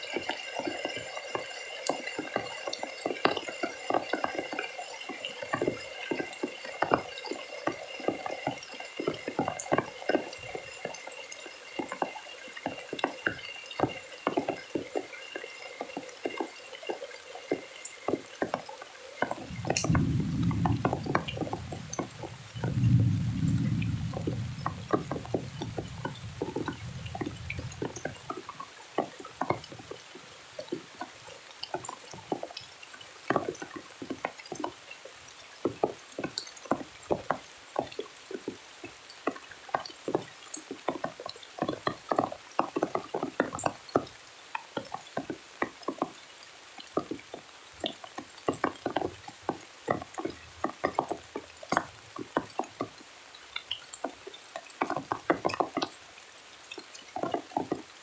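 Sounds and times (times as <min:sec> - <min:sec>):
rain dripping on a surface: 0:00.0 - 0:58.0
low rumble: 0:19.4 - 0:28.3.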